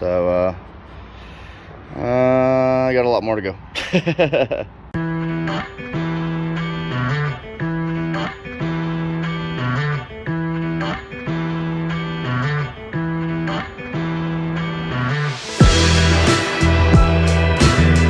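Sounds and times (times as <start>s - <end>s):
electric guitar strumming chords: 5.0s - 18.0s.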